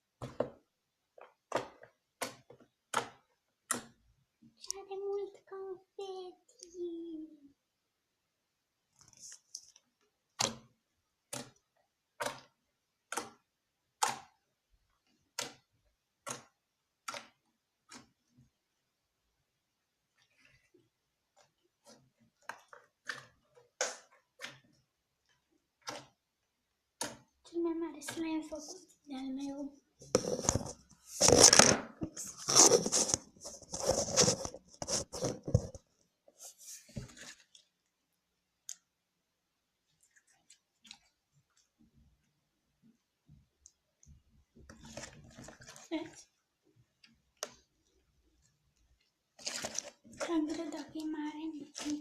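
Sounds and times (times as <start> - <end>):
faint slime handling: 20.0 - 39.0, 39.8 - 42.3, 43.5 - 52.0
slime crackling and tearing: 49.4 - 50.9.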